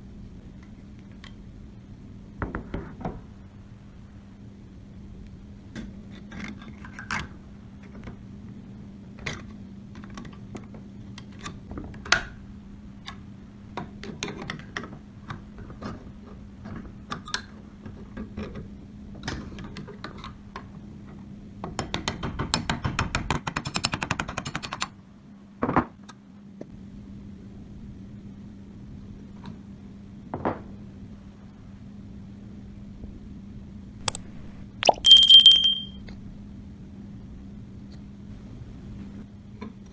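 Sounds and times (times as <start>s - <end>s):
steady low hum: 0.0s - 6.3s.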